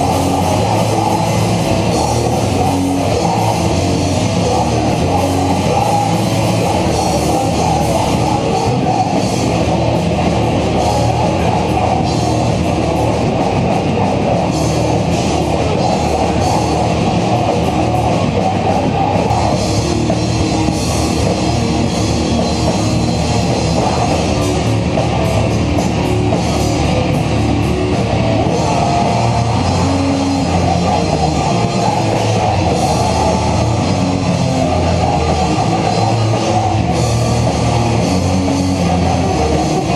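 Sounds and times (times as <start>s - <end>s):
distorted guitars: 0.0s - 39.9s
drum kit: 0.0s - 39.9s.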